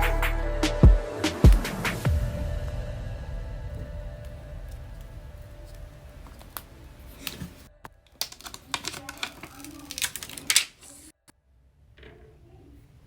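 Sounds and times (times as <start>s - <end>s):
small hard objects clicking: 4.2s - 11.2s.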